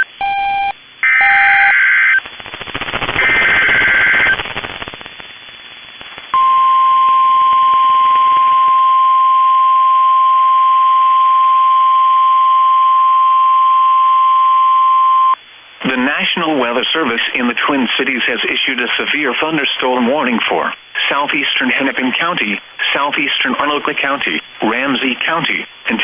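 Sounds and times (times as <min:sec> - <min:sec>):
screechy digital data tones: 0:00.0 - 0:01.8
steady warning alarm tone: 0:00.0 - 0:01.8
radio hiss: 0:01.0 - 0:06.4, 0:15.7 - 0:26.0.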